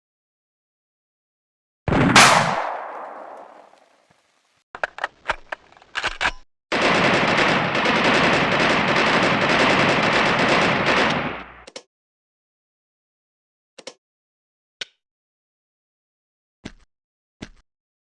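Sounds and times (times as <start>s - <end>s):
gunshots: 1.9s - 3.8s, 6.7s - 11.6s
machine-gun fire: 1.9s - 3.8s, 6.7s - 11.6s.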